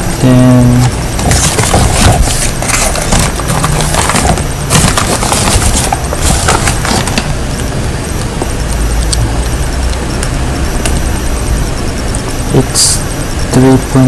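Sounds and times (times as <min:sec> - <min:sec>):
cardboard and plastic box crackling: 0:00.7 - 0:07.3.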